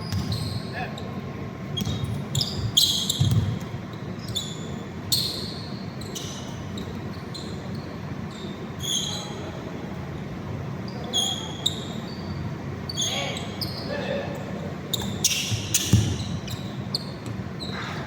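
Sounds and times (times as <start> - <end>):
basketball bouncing: 0.0 - 0.5, 1.8 - 3.7, 15.0 - 17.4
shoe squeaks on court: 0.0 - 1.1, 1.7 - 9.6, 10.9 - 13.9, 14.9 - 18.0.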